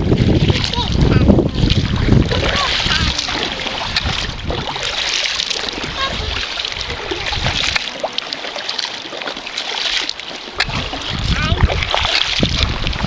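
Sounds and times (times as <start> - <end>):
wind rumble on microphone: 0.0 - 8.2, 10.5 - 13.0
water splashing around a canoe: 0.0 - 13.0.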